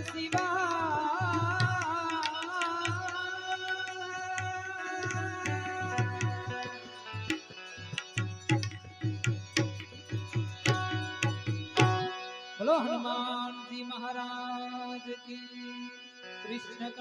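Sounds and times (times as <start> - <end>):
tabla rhythm: 0.0 - 12.2
harmonium sustained notes: 0.0 - 17.0.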